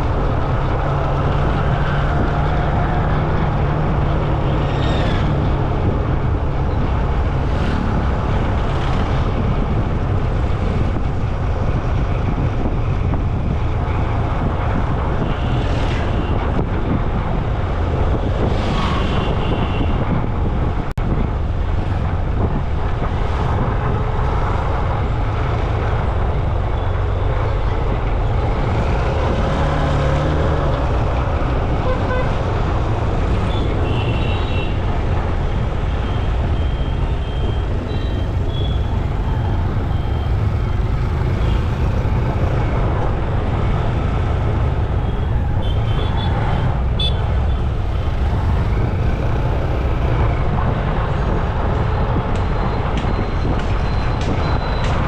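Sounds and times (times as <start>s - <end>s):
wind buffeting microphone: 0.0s - 33.9s
road traffic noise: 0.0s - 55.0s.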